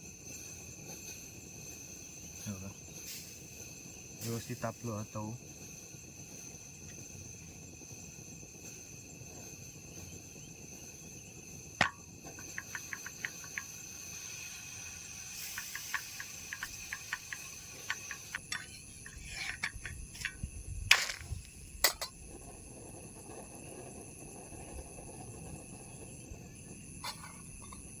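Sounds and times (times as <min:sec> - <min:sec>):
insects chirring: 0:00.0 - 0:28.0
light rapid ticks and taps: 0:11.8 - 0:13.9, 0:15.4 - 0:18.7.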